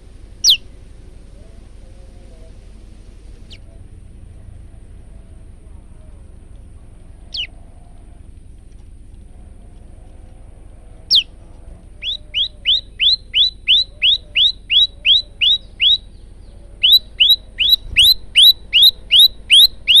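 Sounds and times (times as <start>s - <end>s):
bird calling sharp repeated notes: 0.0s - 0.7s, 3.4s - 3.7s, 7.3s - 7.6s, 11.1s - 20.0s.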